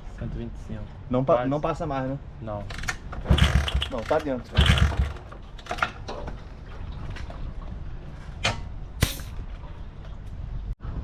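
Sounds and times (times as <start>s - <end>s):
sharp clicks and knocks: 2.7s - 6.4s.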